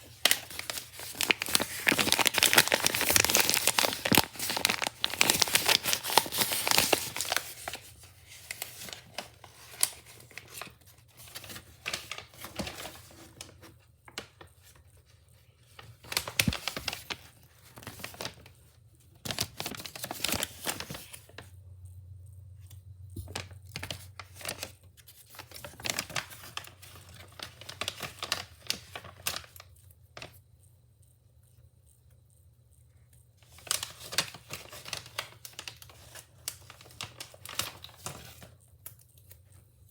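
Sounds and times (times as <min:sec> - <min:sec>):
packaging crinkling and tearing: 0:00.0 - 0:15.0, 0:15.7 - 0:18.6, 0:19.2 - 0:21.5, 0:23.2 - 0:29.6, 0:33.5 - 0:39.6.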